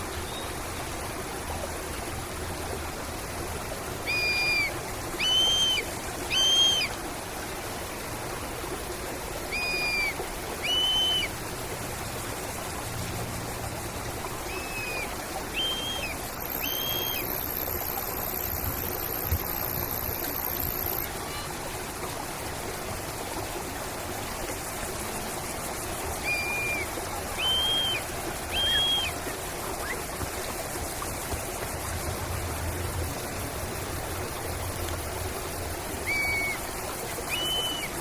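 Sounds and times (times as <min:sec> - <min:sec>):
stream running: 0:00.0 - 0:38.0
bird whistling: 0:04.0 - 0:06.9, 0:09.5 - 0:11.3, 0:14.5 - 0:21.0, 0:26.2 - 0:26.8, 0:27.4 - 0:29.1, 0:36.0 - 0:36.6, 0:37.3 - 0:37.9
thin high steady tone: 0:14.3 - 0:21.5.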